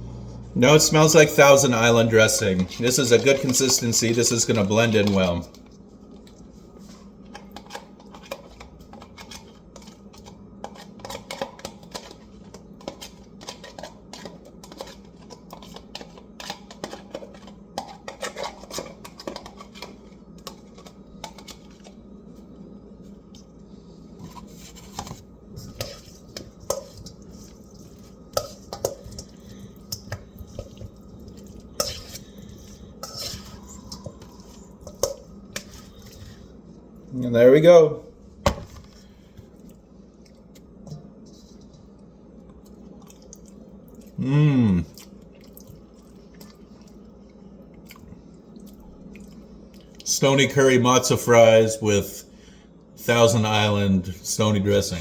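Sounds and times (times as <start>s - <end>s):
thick sauce being stirred: 0.6s - 22.5s, 23.1s - 36.8s.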